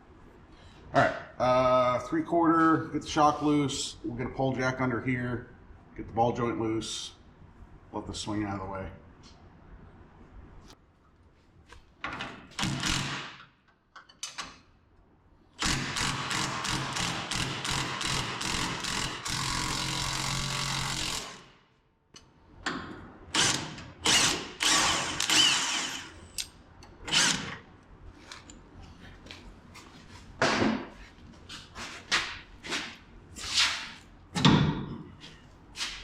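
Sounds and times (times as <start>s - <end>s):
power tool loosening a nut: 23.4s - 26.4s, 27.1s - 27.6s.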